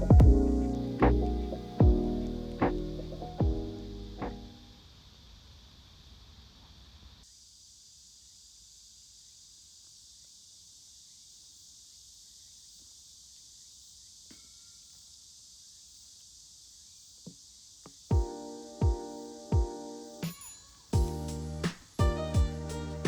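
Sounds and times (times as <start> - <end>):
insects chirring: 4.6 - 23.0.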